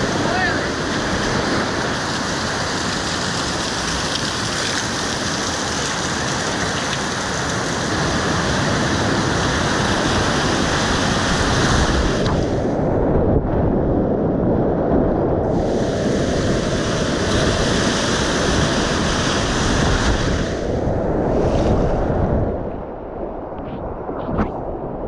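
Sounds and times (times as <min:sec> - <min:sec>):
whitewater rapids rushing: 0:00.0 - 0:12.6.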